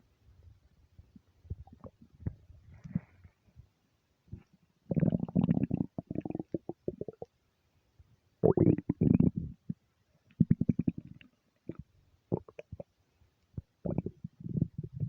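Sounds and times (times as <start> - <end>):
stomach rumbling and gurgling: 1.0 - 3.4, 4.3 - 7.3, 8.4 - 13.0, 13.6 - 15.0.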